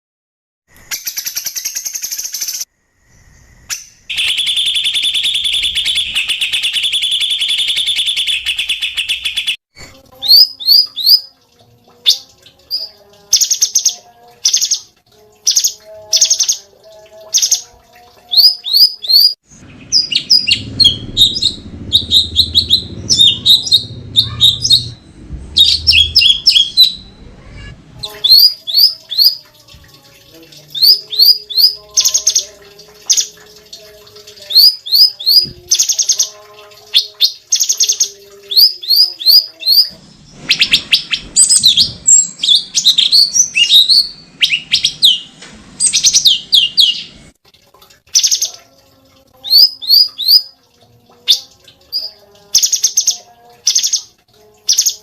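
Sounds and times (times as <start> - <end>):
songbird singing buzzy trills: 0.7 - 9.6, 10.2 - 27.2, 27.9 - 47.2, 49.4 - 50.6, 51.2 - 55.0
low rumble: 19.5 - 28.0.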